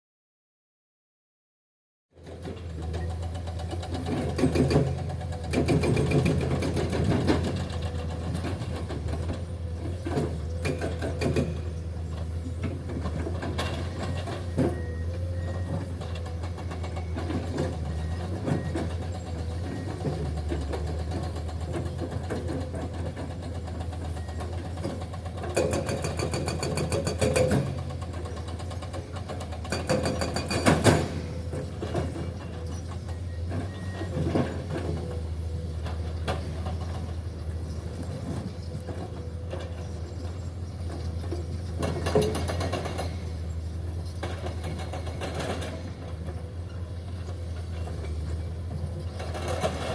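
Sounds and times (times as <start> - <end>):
excavator diesel engine: 2.2 - 49.9.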